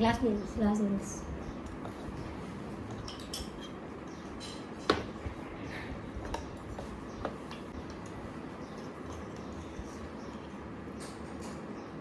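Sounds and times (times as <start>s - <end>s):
utensils clinking on dishes: 2.9s - 5.2s.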